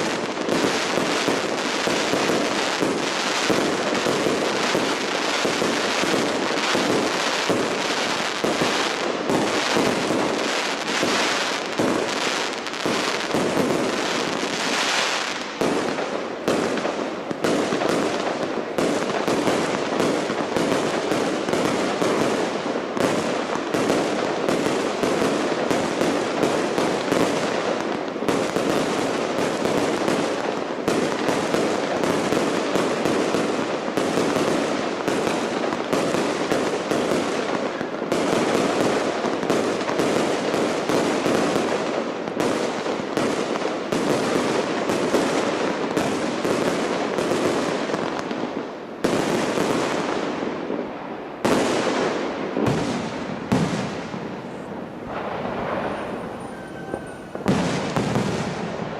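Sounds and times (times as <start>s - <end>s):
fireworks bangs and crackles: 0.0s - 58.9s.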